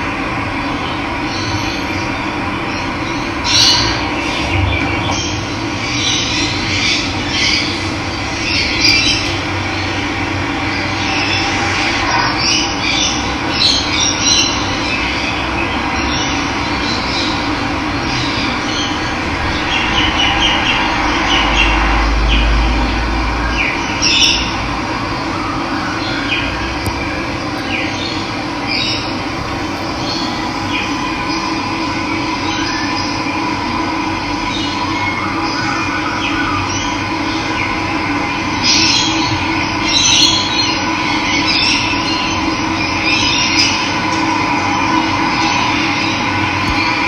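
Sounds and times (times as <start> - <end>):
birds chirping and calling: 2.7 - 10.0, 27.6 - 33.2
low rumble: 3.8 - 12.8, 15.3 - 25.6, 26.4 - 34.3.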